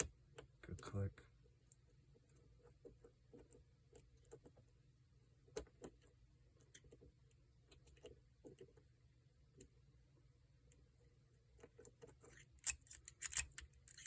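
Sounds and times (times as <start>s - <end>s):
lock pick clicking in padlock: 12.6s - 14.0s.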